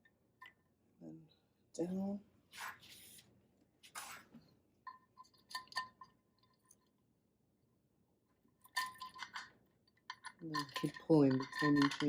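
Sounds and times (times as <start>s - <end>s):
metal engine parts clinking: 10.1s - 12.0s.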